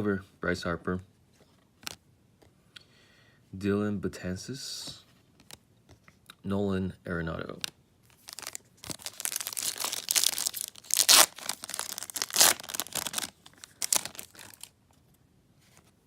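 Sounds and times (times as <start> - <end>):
wrapper crinkling and tearing: 8.1 - 14.8.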